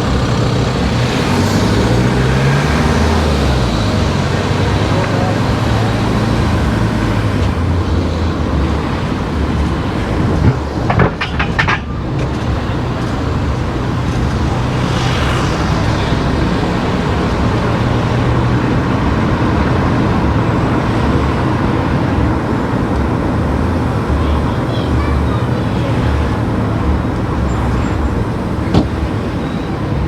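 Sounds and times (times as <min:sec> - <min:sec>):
car driving road noise: 0:00.0 - 0:30.0
sharp knocks: 0:10.1 - 0:12.5, 0:28.7 - 0:29.0.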